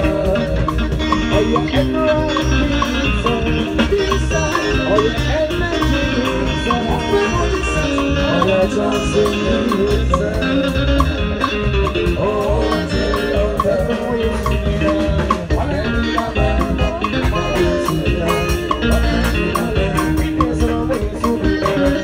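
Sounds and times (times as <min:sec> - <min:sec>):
live band playing gospel music: 0:00.0 - 0:22.0.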